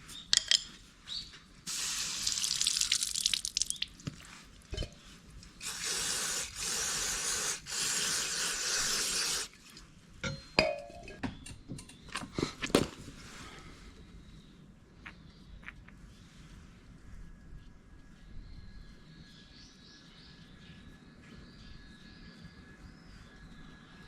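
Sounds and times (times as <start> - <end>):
aerosol spray can hissing: 1.7 - 3.2, 5.6 - 9.5.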